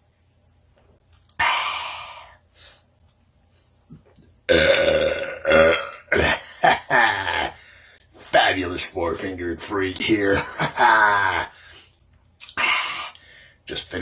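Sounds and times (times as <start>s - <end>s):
man belching: 4.5s - 7.6s.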